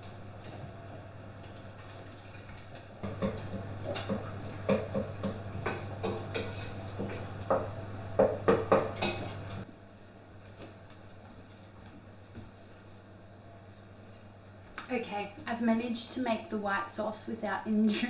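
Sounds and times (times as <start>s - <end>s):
kitchen utensils clinking: 3.0s - 9.6s
steady low hum: 3.0s - 9.6s.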